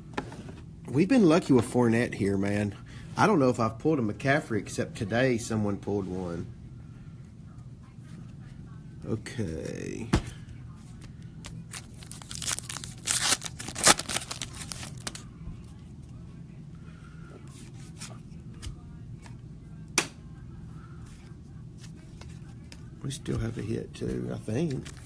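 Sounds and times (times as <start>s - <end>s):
foil wrapper tearing and crinkling: 11.4s - 15.2s
light clicks and rustles of handling: 21.0s - 25.0s.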